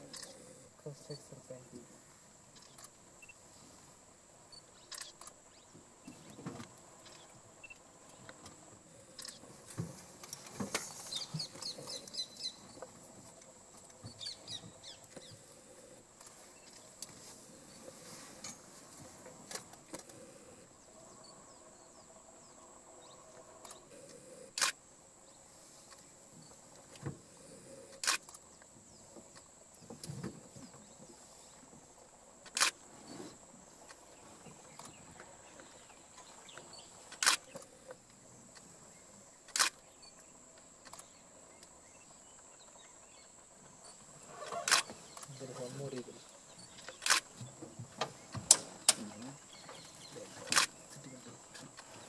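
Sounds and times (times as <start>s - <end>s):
bird chirping: 2.4s - 3.7s, 4.5s - 9.6s, 10.2s - 18.8s, 19.9s - 24.3s, 25.2s - 52.0s
sharp clicks: 4.8s - 5.4s, 8.4s - 9.4s, 23.6s - 24.8s, 27.9s - 28.4s, 32.4s - 32.8s, 36.5s - 38.6s, 39.4s - 39.8s, 46.8s - 47.4s, 50.4s - 50.8s.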